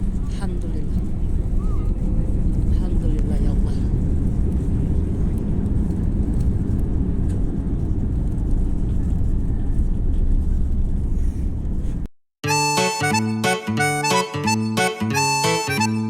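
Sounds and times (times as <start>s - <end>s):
jet cabin engine rumble: 0.0s - 12.1s.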